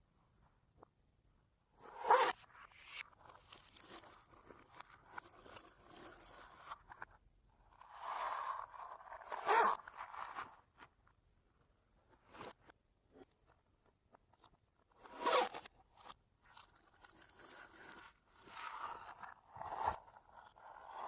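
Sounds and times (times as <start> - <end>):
slime crackling and scraping: 2.1 - 6.9.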